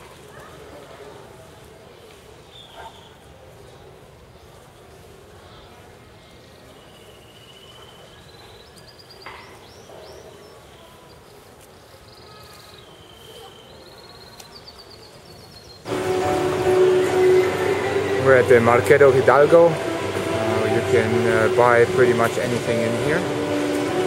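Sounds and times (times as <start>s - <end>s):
hubbub of voices: 0.0s - 24.0s
small birds chirping: 6.4s - 15.9s
music: 15.9s - 24.0s.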